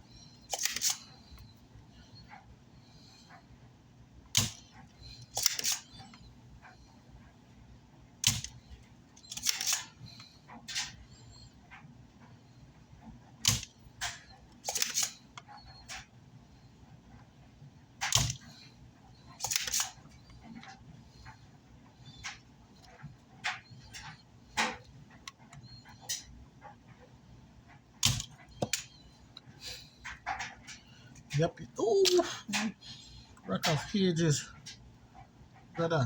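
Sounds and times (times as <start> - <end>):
desoldering pump clicking: 0.5 - 1.0, 4.3 - 4.6, 5.3 - 5.8, 8.2 - 8.6, 9.2 - 9.8, 13.4 - 15.5, 18.0 - 18.5, 19.4 - 19.9, 28.0 - 30.4.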